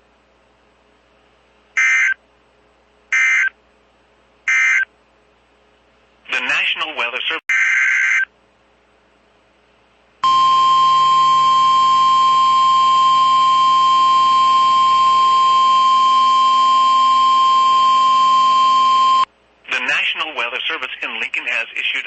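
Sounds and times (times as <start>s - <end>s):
steady high alert tone: 10.2s - 19.3s.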